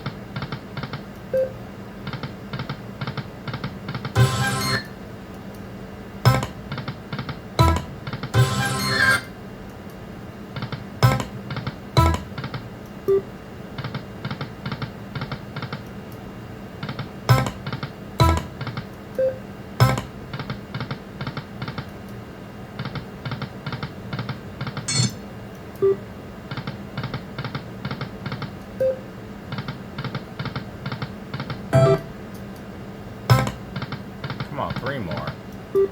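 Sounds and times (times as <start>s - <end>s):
rapid electronic ticks: 33.3s - 35.4s.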